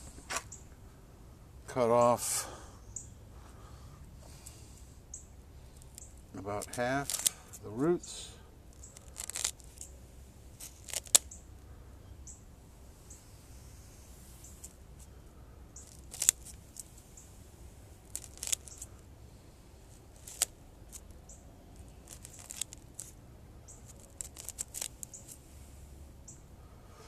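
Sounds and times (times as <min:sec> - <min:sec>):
scissors snipping roots: 0:10.6 - 0:11.3, 0:18.1 - 0:18.9.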